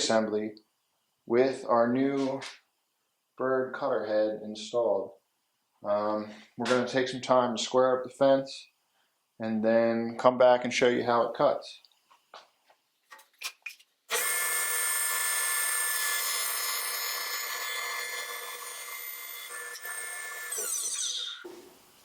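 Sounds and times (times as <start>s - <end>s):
jointer whining: 14.1s - 22.0s.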